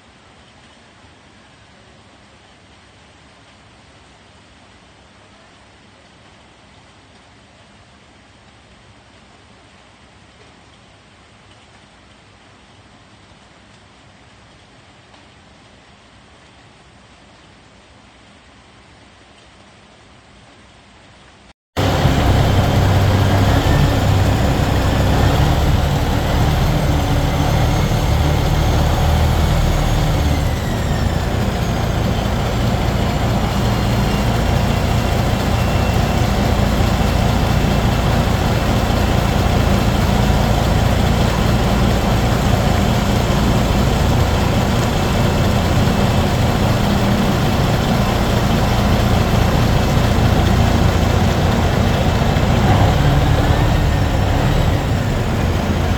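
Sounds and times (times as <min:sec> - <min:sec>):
motor vehicle running loudly: 0:21.8 - 0:55.9.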